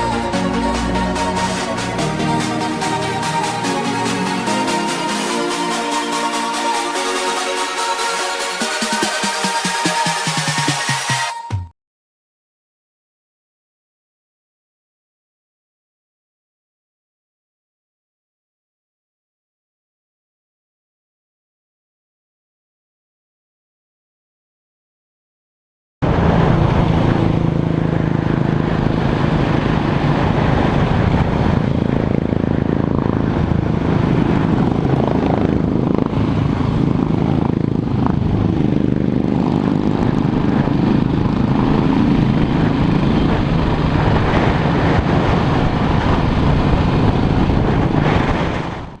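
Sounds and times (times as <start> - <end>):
motorcycle engine running: 26.2 - 49.0.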